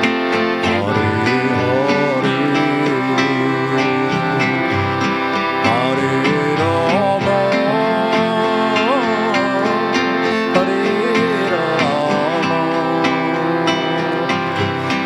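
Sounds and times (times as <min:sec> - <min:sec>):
chord drone: 0:00.0 - 0:15.0
sliding melody line: 0:00.0 - 0:15.0.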